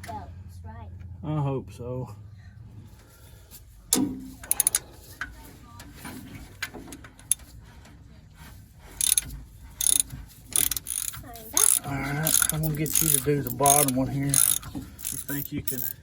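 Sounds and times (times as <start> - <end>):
ratchet wrench clicking: 3.9 - 4.8, 9.0 - 16.0
metal clinks: 4.4 - 4.8, 9.0 - 16.0.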